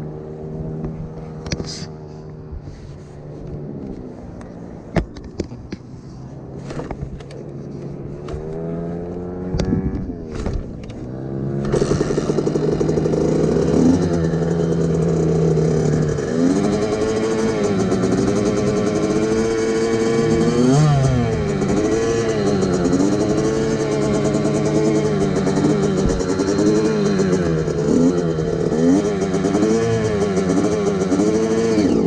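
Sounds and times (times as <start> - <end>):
motorbike engine revving: 6.4 - 32.0.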